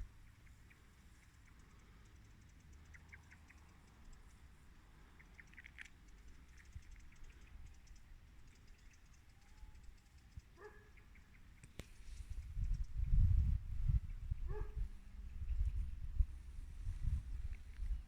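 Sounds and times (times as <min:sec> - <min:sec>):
high chirps and ticks: 0:00.2 - 0:13.5.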